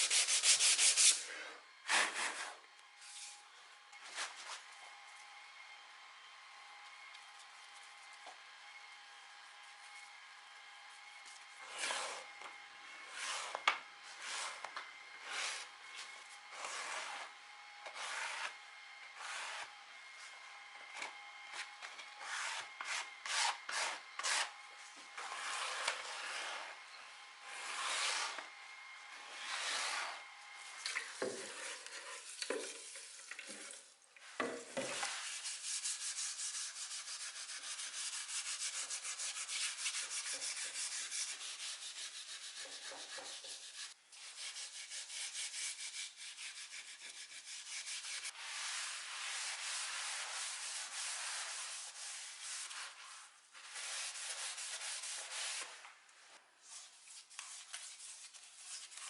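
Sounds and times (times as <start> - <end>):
sandpaper rubbing on wood: 0.0 - 1.3, 18.0 - 18.6, 22.2 - 24.5, 35.0 - 55.8.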